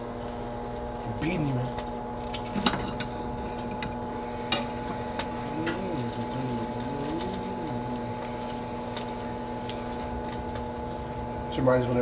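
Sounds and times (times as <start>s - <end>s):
microwave oven humming: 0.0s - 12.0s
person humming faintly: 4.7s - 8.9s.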